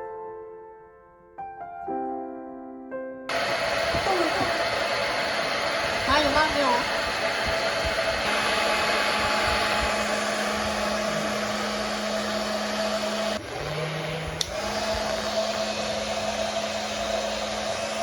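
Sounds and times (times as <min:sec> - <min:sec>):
hair dryer click: 0:03.3 - 0:13.4, 0:14.1 - 0:18.0
hair dryer blowing: 0:03.3 - 0:18.0.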